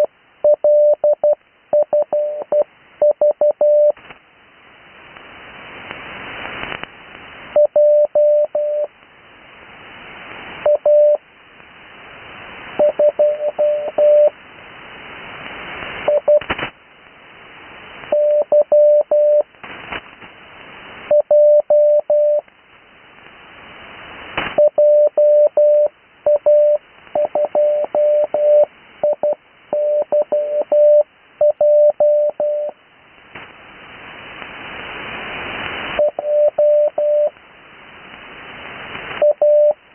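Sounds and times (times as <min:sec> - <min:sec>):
radio band hiss: 0:03.9 - 0:07.6, 0:08.8 - 0:21.1, 0:22.4 - 0:24.6, 0:32.7 - 0:39.9
morse code tone: 0:07.6 - 0:08.9, 0:12.8 - 0:14.3, 0:18.1 - 0:19.4, 0:24.6 - 0:32.8, 0:36.0 - 0:37.3, 0:39.2 - 0:39.8.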